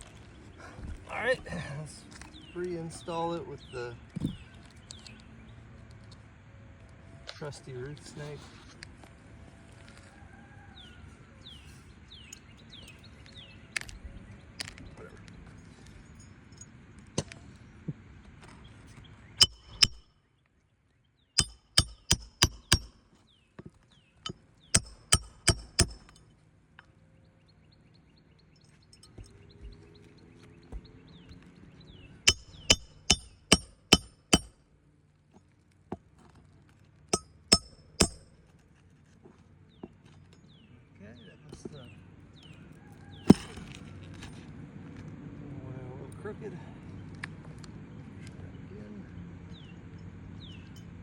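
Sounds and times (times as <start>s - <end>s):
hammer strikes on metal: 19.4s - 20.0s, 21.4s - 23.0s, 24.2s - 26.2s, 32.3s - 34.6s, 37.2s - 38.3s.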